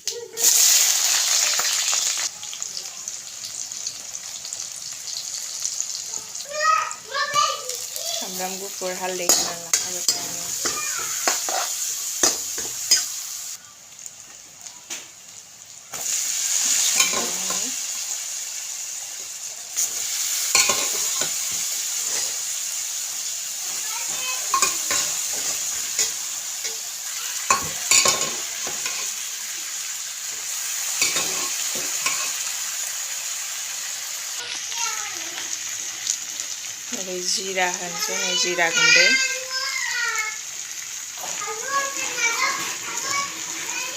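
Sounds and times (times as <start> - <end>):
onion sizzling in hot oil: 0.0 - 43.9
spoon scraping a pan: 8.4 - 13.2, 16.6 - 17.8, 19.8 - 22.4, 24.0 - 29.2, 31.0 - 32.5.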